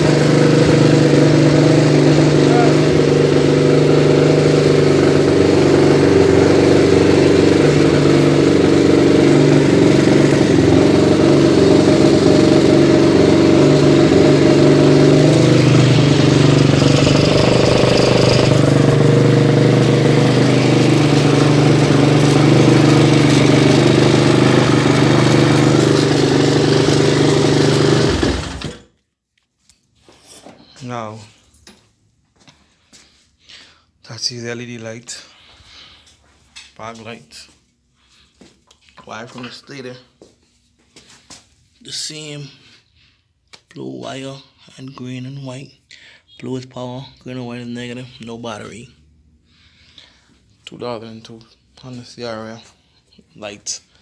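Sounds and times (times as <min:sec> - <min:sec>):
motorcycle engine idling: 0:00.0 - 0:28.8.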